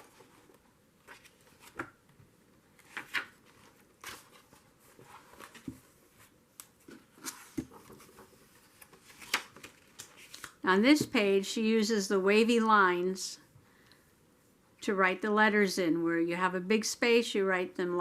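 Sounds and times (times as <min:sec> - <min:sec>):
book pages turning: 0:00.0 - 0:02.0, 0:02.7 - 0:10.6.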